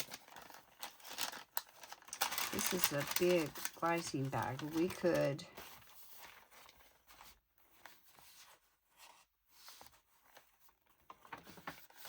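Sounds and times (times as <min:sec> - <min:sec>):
paper rustling and ticks: 0:00.0 - 0:12.0.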